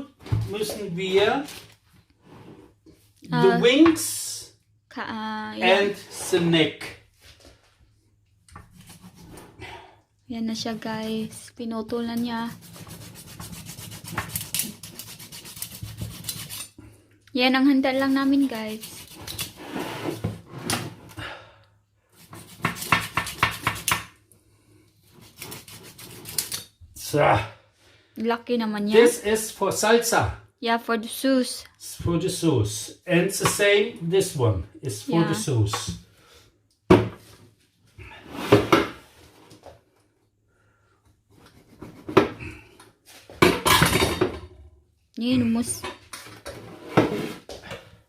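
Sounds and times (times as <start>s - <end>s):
dishes and utensils clattering: 43.4s - 44.5s.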